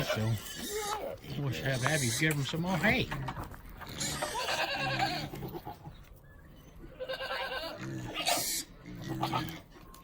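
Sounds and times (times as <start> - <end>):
goats bleating: 3.8 - 5.9, 6.9 - 9.7.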